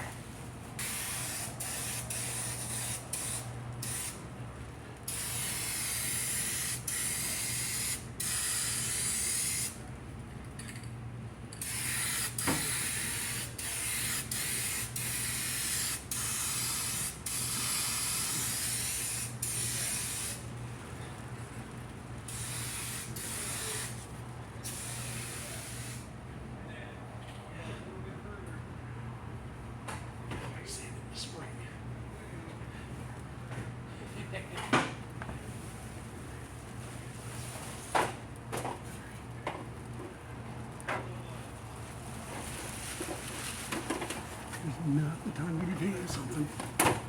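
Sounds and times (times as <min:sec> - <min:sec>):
steady low hum: 0:44.5 - 0:46.8.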